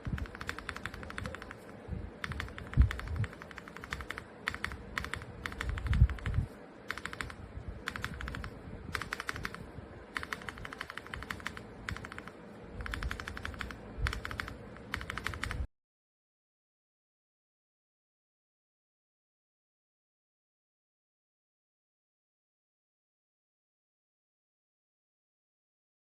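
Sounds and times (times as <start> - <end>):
mechanical keyboard typing: 0.0 - 15.7.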